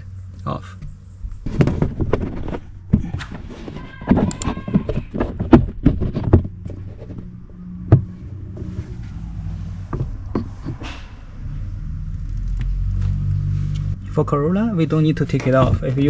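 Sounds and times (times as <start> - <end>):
low steady hum: 0.0 - 10.4.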